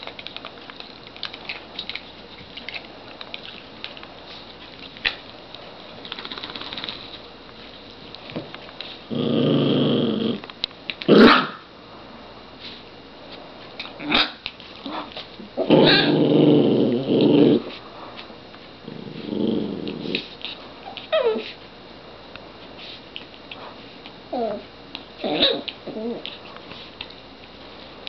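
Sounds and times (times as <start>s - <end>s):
small dog play-growling: 9.1s - 10.5s, 14.0s - 17.8s, 18.8s - 21.5s, 24.3s - 26.4s.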